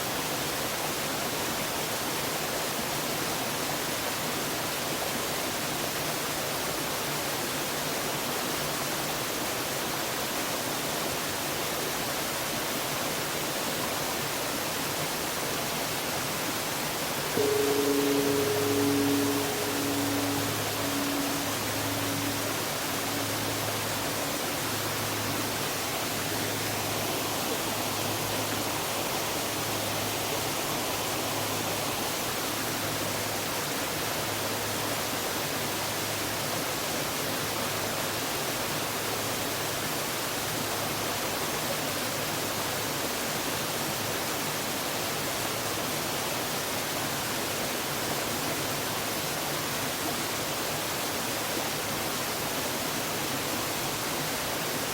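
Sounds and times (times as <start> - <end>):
waterfall rushing: 15.9 - 45.0
temple bell humming: 17.4 - 33.2.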